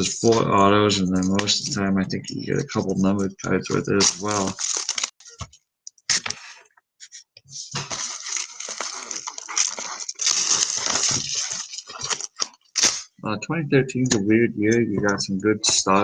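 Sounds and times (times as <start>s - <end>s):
packaging crinkling and tearing: 3.7s - 5.4s, 7.8s - 13.1s
packaging clicks: 7.9s - 13.0s.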